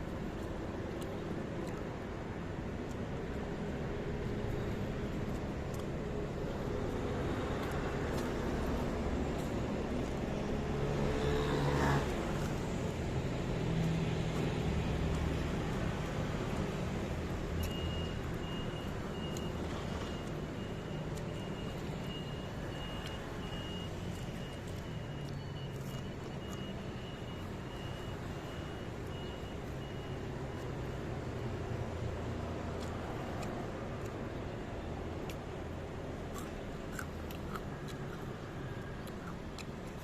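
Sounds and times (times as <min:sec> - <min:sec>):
road traffic rumble: 0:00.0 - 0:40.0
faint high beep: 0:17.6 - 0:31.6.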